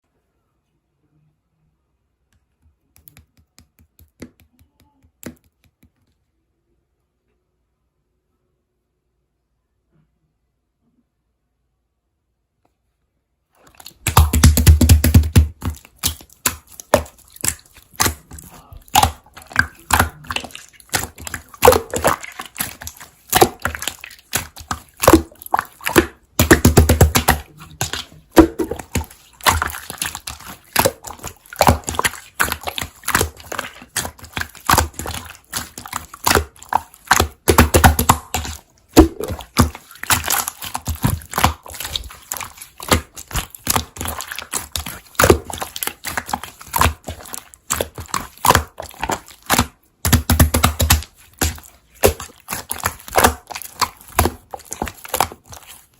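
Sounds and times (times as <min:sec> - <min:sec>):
slime squished by hand: 0:13.6 - 0:55.9.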